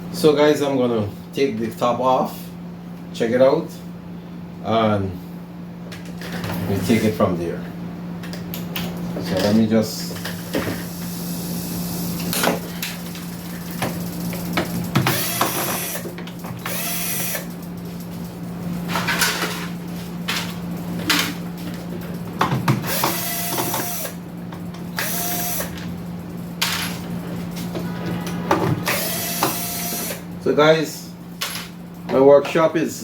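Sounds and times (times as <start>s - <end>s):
power screwdriver motor whine: 15.1s - 16.0s, 16.6s - 17.5s, 22.8s - 24.2s, 25.0s - 25.8s, 28.8s - 30.2s.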